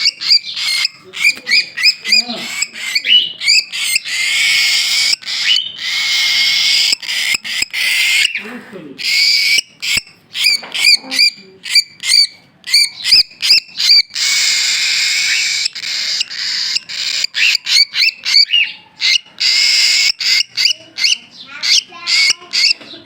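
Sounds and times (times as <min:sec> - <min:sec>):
bird chick shrill chirps: 0:00.0 - 0:08.4, 0:09.0 - 0:22.9.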